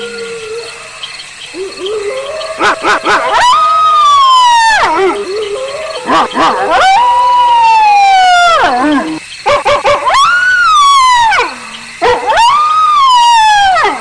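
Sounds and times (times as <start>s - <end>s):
low steady howl: 0.0s - 9.2s
wolves howling: 0.0s - 9.2s, 9.9s - 14.0s.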